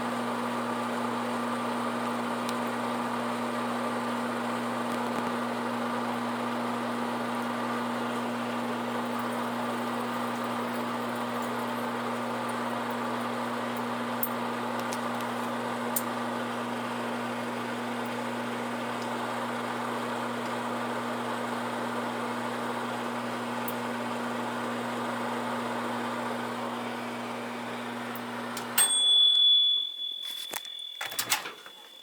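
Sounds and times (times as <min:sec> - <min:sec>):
microwave oven humming: 0:00.0 - 0:32.0
high electronic beep: 0:29.6 - 0:32.0.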